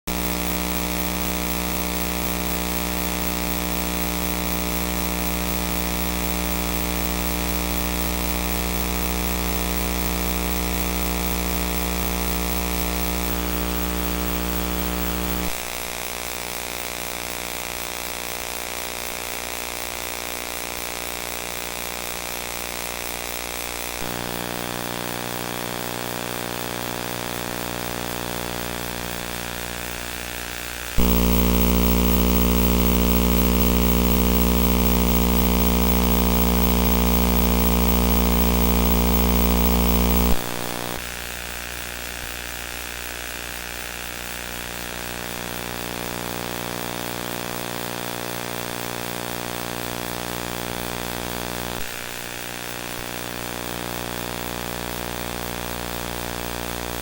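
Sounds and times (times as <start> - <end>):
electrical buzz: 13.3 - 15.6, 31.0 - 41.0.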